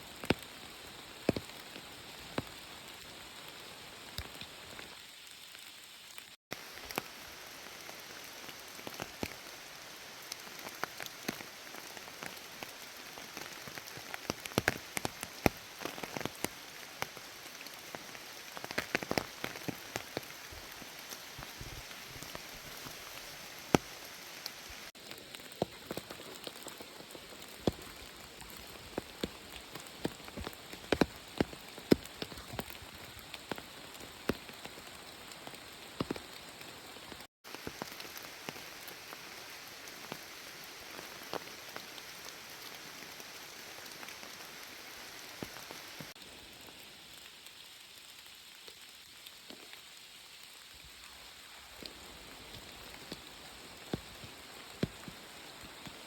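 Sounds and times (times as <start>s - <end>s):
raindrops striking close by: 0.0s - 56.0s
steady rain falling: 0.0s - 56.0s.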